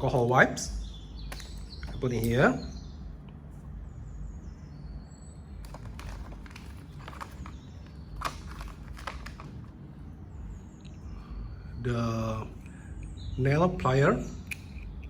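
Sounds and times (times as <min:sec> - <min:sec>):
items clicking into plastic toolbox: 0:01.3 - 0:02.0, 0:05.6 - 0:09.8.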